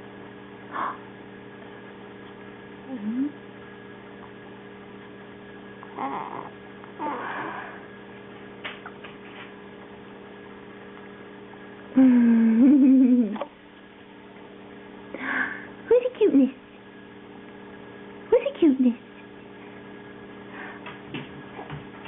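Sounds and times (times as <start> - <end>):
steady low hum: 0.0 - 22.0
baby cooing: 5.8 - 7.8.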